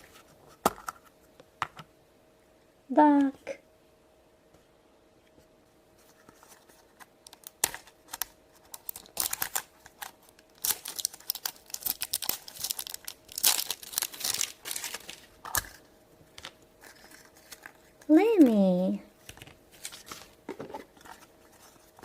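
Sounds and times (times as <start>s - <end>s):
plastic packaging crinkling: 7.2s - 15.8s, 19.3s - 22.0s.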